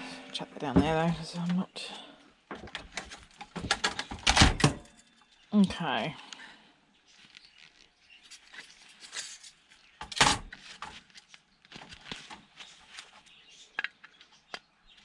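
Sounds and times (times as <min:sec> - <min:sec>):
clicks and knocks of parts handled: 0:02.5 - 0:05.3.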